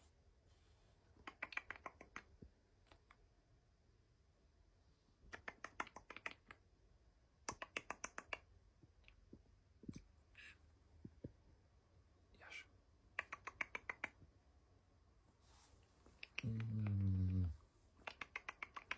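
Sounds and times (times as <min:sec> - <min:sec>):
cockatoo copying clicks: 0:01.2 - 0:02.3, 0:05.3 - 0:06.6, 0:07.4 - 0:09.2, 0:13.1 - 0:14.2, 0:16.1 - 0:17.4, 0:18.0 - 0:18.9
mouth clicks: 0:01.2 - 0:02.4, 0:05.3 - 0:06.6, 0:07.4 - 0:09.2, 0:13.1 - 0:14.2, 0:16.2 - 0:18.9.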